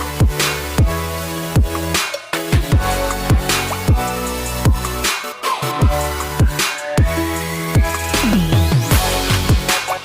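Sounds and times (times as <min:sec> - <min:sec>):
electronic music with heavy beat: 0:00.0 - 0:10.0
held bass line: 0:05.8 - 0:10.0.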